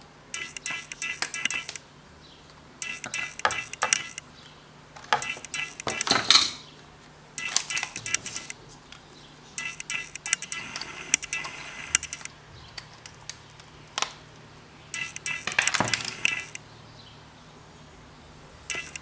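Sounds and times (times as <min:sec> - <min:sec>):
small hard parts clicking and rattling: 0:02.8 - 0:04.3, 0:05.0 - 0:06.6, 0:15.0 - 0:16.6.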